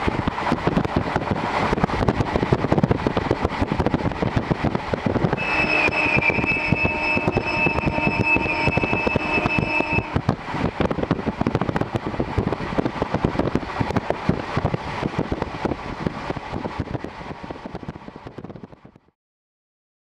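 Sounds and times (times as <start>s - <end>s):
steady high tone: 5.4s - 10.2s.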